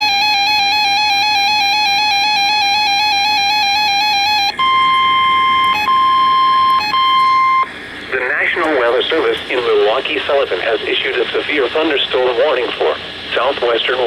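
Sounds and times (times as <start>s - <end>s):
electronic alarm warbling: 0.0s - 7.7s
steady high alarm tone: 0.0s - 7.8s.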